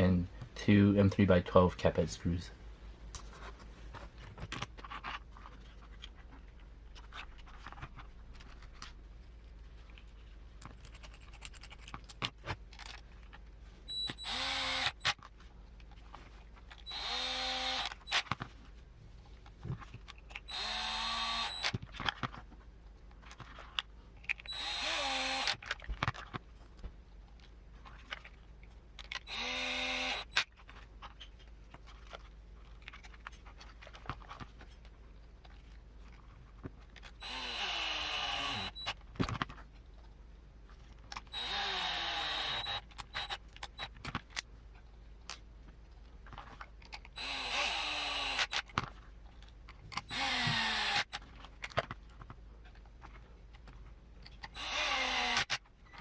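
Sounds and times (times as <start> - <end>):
parts and screws clicking: 10.6 - 15.3, 16.7 - 18.5, 19.8 - 22.4, 23.2 - 26.3, 29.0 - 31.4, 37.0 - 39.5, 41.1 - 44.5, 46.6 - 48.9, 49.7 - 52.0, 53.6 - 56.0
electric screwdriver driving screws: 13.9 - 15.2, 16.9 - 18.2, 20.5 - 21.8, 24.5 - 25.7, 29.2 - 30.4, 37.2 - 39.0, 41.3 - 43.4, 47.2 - 48.7, 50.1 - 51.2, 54.5 - 55.6.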